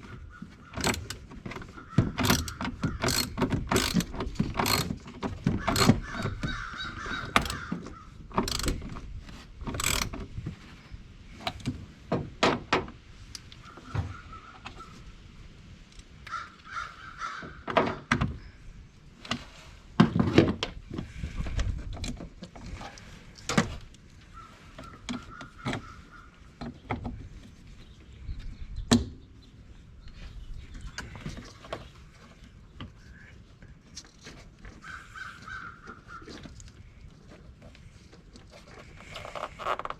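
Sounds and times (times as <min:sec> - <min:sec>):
hand tools clanking on metal: 0:00.8 - 0:01.3, 0:02.2 - 0:05.0, 0:05.6 - 0:06.4, 0:07.2 - 0:07.6, 0:08.4 - 0:09.0, 0:09.8 - 0:10.1
crows cawing: 0:05.6 - 0:08.2, 0:16.3 - 0:17.6, 0:34.8 - 0:36.2.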